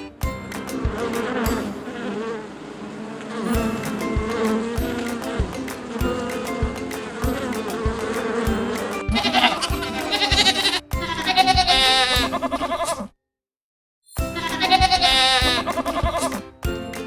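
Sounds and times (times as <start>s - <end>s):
background music with steady beat: 0.0s - 2.0s, 3.5s - 12.6s, 14.2s - 17.0s
farm animal bleating: 9.1s - 13.1s, 14.4s - 16.4s.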